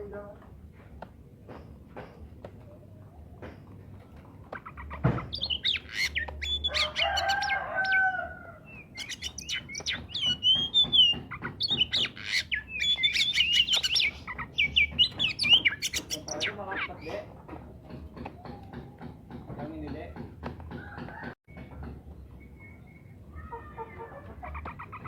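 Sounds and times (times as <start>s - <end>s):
bird singing varied whistled notes: 5.1s - 17.2s, 22.3s - 23.2s
low drawn-out bird call: 5.3s - 16.5s.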